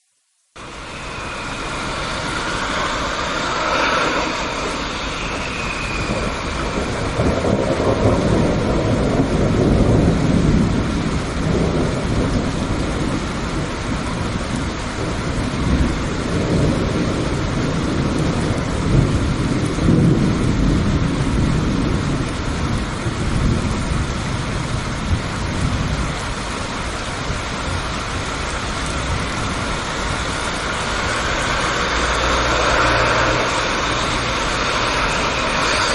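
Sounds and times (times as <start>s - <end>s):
steady rain: 0.0s - 35.9s
thunder rolling: 0.6s - 35.9s.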